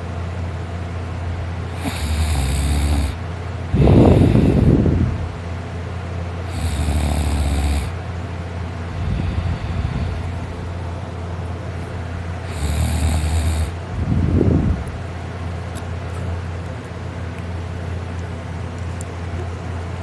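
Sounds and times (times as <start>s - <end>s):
person snoring loudly: 1.7s - 4.9s, 6.4s - 8.0s, 12.4s - 13.8s
soft breaths: 3.7s - 4.9s, 8.9s - 11.1s.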